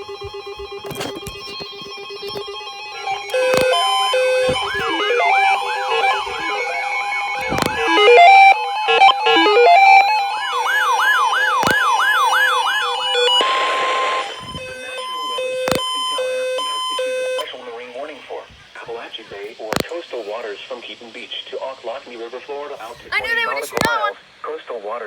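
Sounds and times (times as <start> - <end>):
electronic alarm tones and beeps: 1.2 - 17.5.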